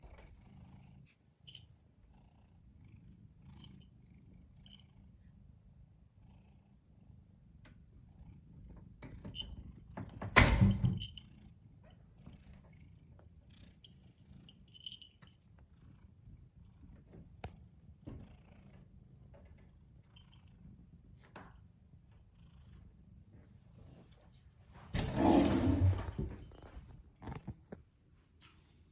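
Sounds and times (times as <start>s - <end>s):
cat purring: 15.6s - 21.3s, 24.9s - 27.8s.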